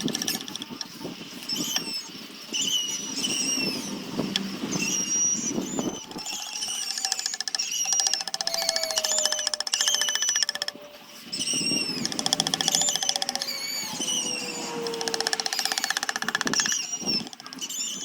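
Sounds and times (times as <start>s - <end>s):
power tool cutting wood: 4.0s - 17.7s.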